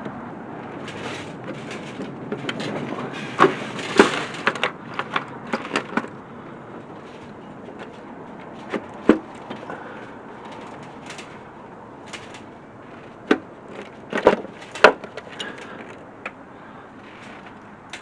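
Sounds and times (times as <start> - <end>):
tools and metal parts clinking: 0.6 - 18.0.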